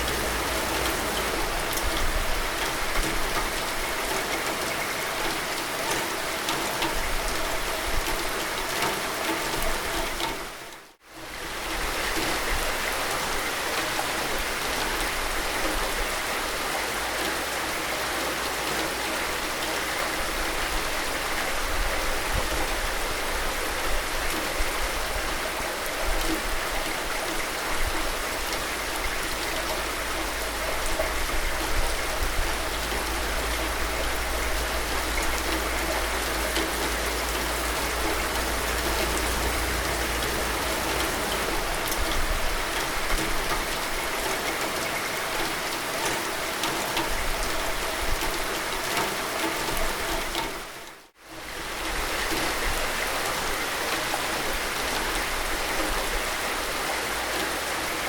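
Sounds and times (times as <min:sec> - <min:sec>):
low rumble: 0:00.0 - 0:03.1, 0:29.6 - 0:43.5
steady rain: 0:00.0 - 0:58.0.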